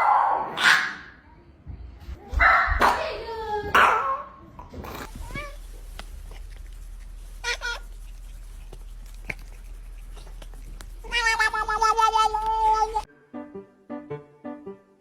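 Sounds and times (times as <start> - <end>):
cat yowling: 7.3 - 13.1
cat meowing: 9.4 - 13.1.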